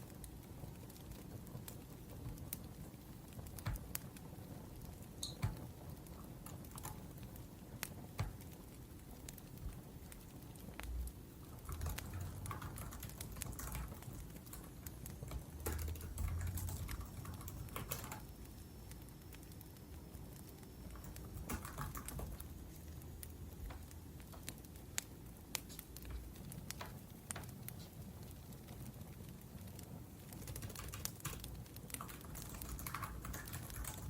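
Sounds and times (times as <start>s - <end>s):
wood fire crackling: 0.0s - 34.0s
laptop keyboard typing: 5.2s - 7.5s, 11.4s - 19.0s, 20.9s - 24.6s, 30.2s - 34.0s.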